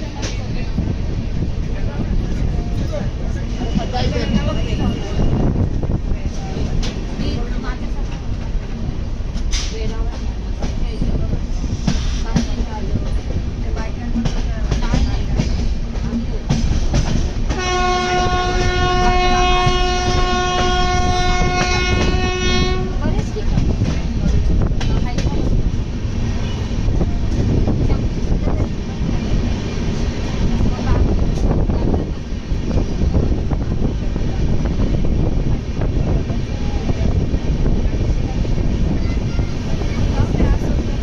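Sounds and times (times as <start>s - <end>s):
train rumbling: 0.0s - 41.0s
wheels clacking over rail joints: 6.3s - 22.3s
train horn blast: 17.5s - 23.2s.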